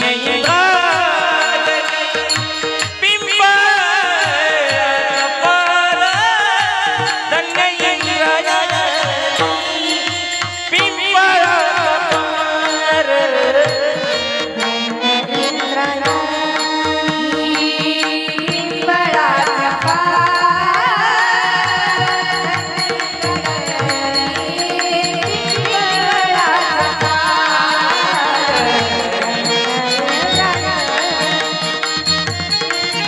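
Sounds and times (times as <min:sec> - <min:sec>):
person singing ornate melody: 0:00.0 - 0:33.0.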